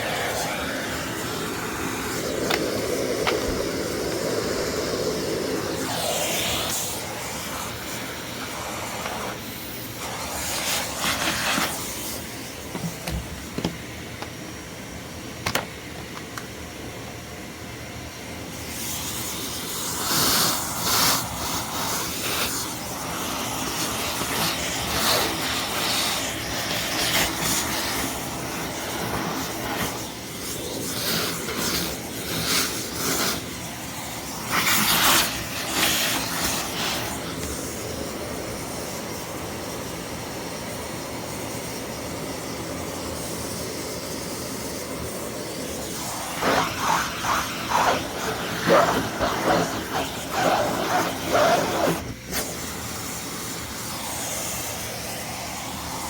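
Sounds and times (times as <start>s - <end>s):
vacuum cleaner running: 0.0s - 56.0s.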